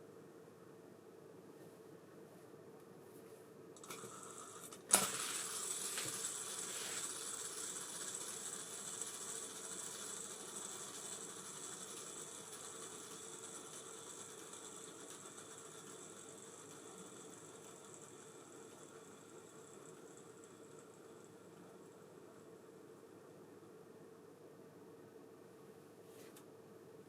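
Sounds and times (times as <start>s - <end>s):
reel spool whirring: 3.8s - 23.3s.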